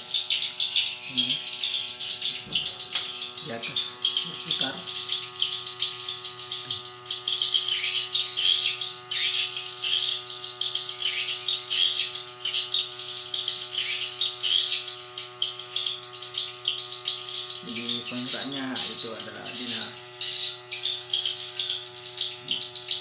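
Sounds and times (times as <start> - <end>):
steady low hum: 0.0 - 23.0
swiftlets chirping: 0.0 - 23.0.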